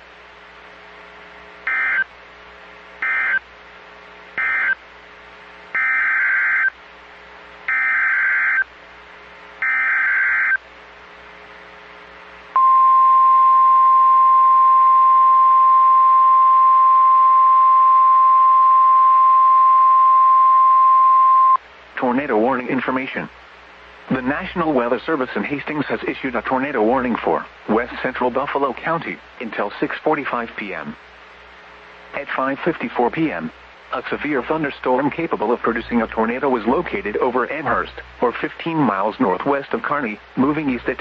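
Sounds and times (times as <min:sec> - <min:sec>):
steady warning alarm tone: 0:01.6 - 0:02.1, 0:03.0 - 0:03.5, 0:04.4 - 0:04.8, 0:05.7 - 0:06.8, 0:07.7 - 0:08.7, 0:09.6 - 0:10.6.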